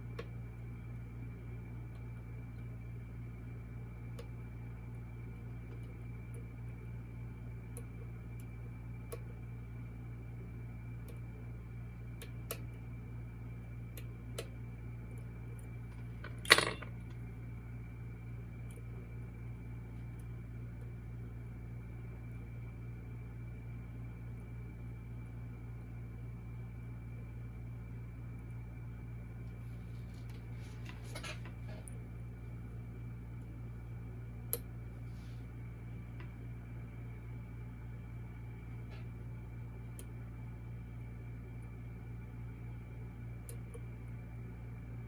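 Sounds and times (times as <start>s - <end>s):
steady electrical hum: 0.0s - 45.0s
metallic clatter with ring: 16.2s - 17.0s.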